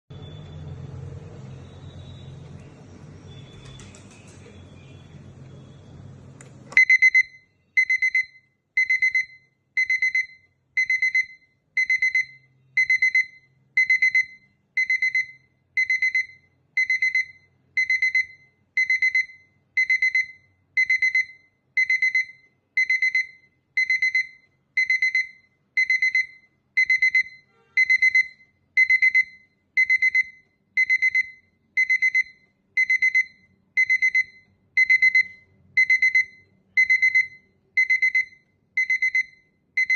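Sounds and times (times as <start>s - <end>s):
alarm clock rapid beeps: 6.8s - 39.9s.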